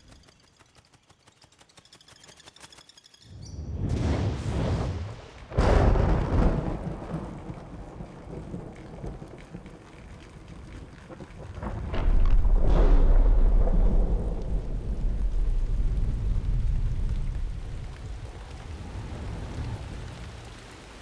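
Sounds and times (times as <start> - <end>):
thunder rumbling: 3.6 - 21.0
rain hiss: 4.4 - 21.0.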